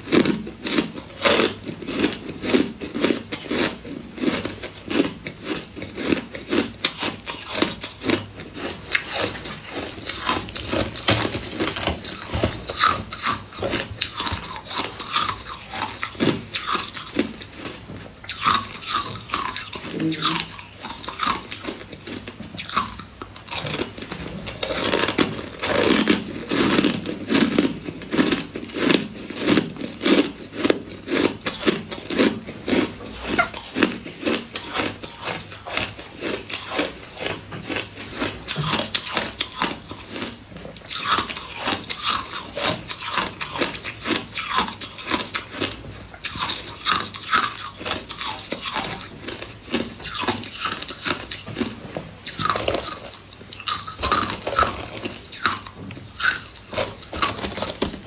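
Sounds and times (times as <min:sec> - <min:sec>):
crunching ice in mouth: 0:00.0 - 0:58.0.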